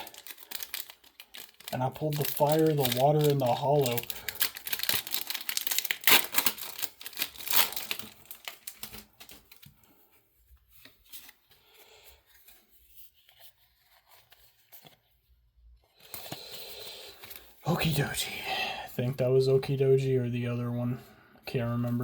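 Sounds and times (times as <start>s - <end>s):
foil pack tearing and crinkling: 0.0s - 9.9s.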